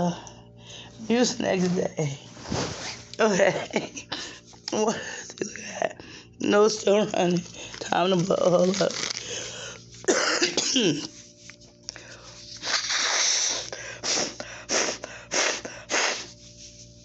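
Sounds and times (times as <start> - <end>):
woman coughing: 10.1 - 11.1
woman blowing her nose: 12.6 - 16.5.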